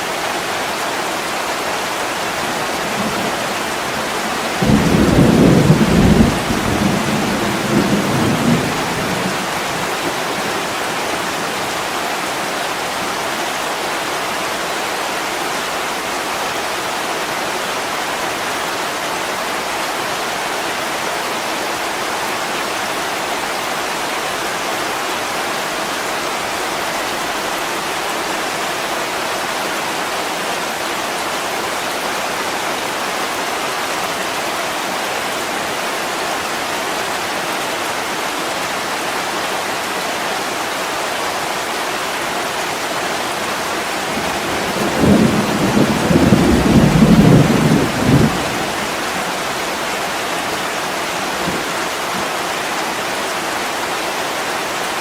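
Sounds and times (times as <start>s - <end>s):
heavy rain: 0.0s - 55.0s
thunder rumbling: 3.0s - 11.0s, 44.0s - 49.7s.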